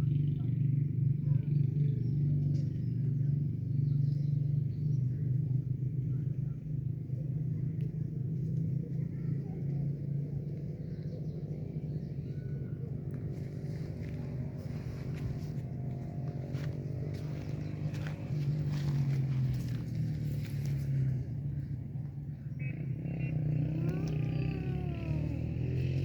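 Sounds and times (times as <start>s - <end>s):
low rumble: 0.0s - 26.0s
faint bird chirps: 22.3s - 26.0s.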